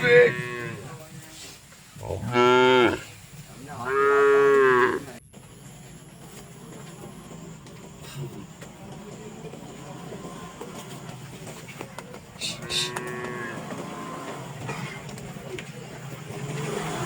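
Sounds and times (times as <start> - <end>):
cow mooing: 0.0 - 0.9, 2.0 - 3.1, 3.8 - 5.2, 12.4 - 14.7.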